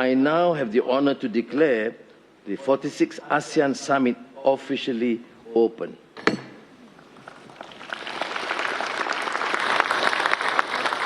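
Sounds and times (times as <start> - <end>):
audience applause: 7.2 - 11.0.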